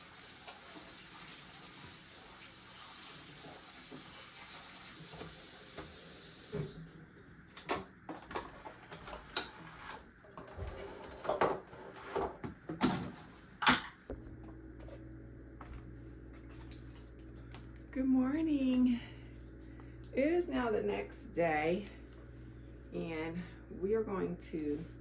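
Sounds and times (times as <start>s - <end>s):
food frying in a pan: 0.0s - 6.6s
dishes and utensils clattering: 8.2s - 14.0s
steady low hum: 13.1s - 25.0s.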